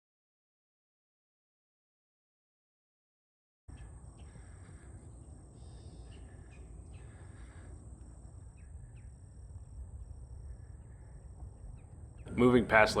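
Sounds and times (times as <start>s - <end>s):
faint bird chirps: 3.7s - 13.0s
low steady rumble: 3.8s - 13.0s.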